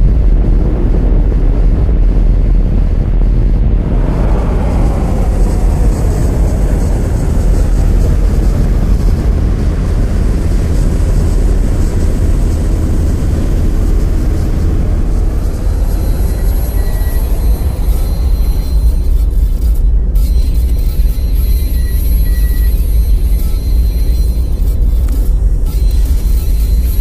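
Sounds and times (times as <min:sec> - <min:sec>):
low drone with falling sweep: 0:00.0 - 0:27.0
faint thin high tone: 0:15.4 - 0:19.6.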